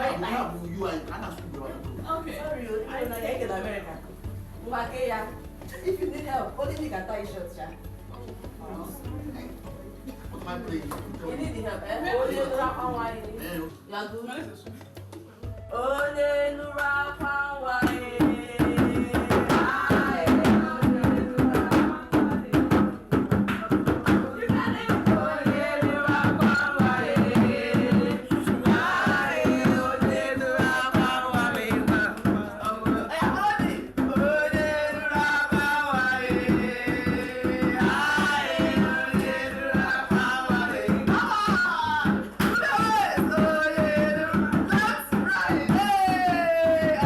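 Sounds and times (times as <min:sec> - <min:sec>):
hand-drum percussion: 0:00.0 - 0:47.0
person singing: 0:15.7 - 0:47.0.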